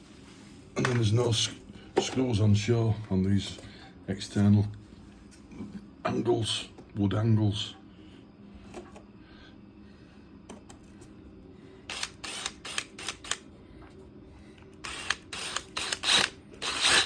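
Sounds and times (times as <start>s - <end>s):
power drill bursts: 11.9s - 13.4s, 14.8s - 17.0s.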